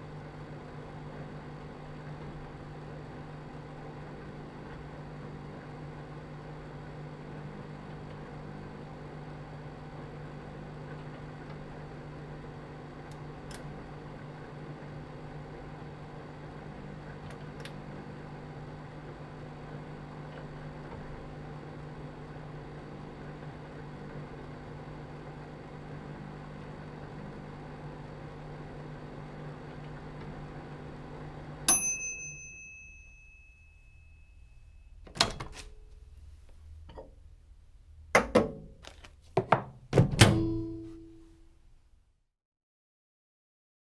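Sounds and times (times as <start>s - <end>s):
microwave oven humming: 0.0s - 39.1s, 39.7s - 42.0s
microwave door clunks and dish clinks: 31.7s - 33.4s, 40.0s - 41.1s.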